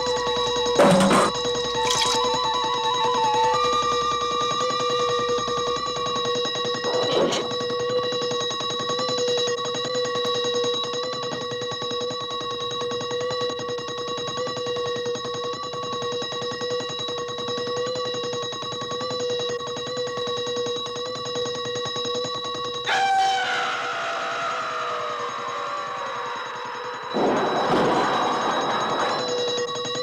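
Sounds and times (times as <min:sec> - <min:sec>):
alarm clock bell ringing: 0:00.0 - 0:02.6, 0:23.6 - 0:30.0.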